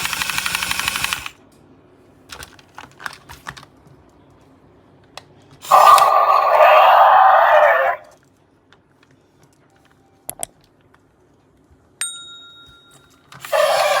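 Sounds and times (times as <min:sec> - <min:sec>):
quick clicks: 0:00.0 - 0:01.4
bell-like ding: 0:12.0 - 0:13.0.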